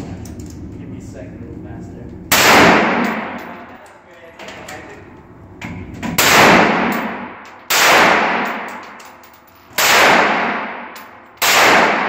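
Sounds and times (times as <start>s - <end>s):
rifle shots echoing: 2.3s - 3.6s, 6.2s - 9.0s, 9.7s - 12.0s.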